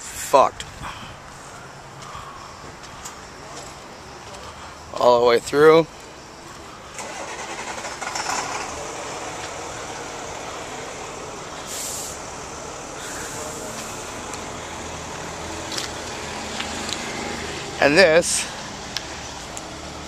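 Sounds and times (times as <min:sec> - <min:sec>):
truck engine running: 0:06.4 - 0:20.0
short sharp hiss: 0:11.6 - 0:12.2.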